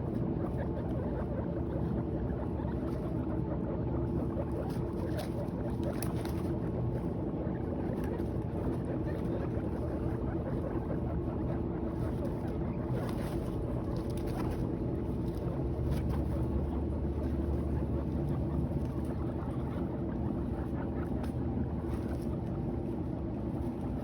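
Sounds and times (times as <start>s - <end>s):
guinea pigs chewing hay: 0.0s - 24.0s.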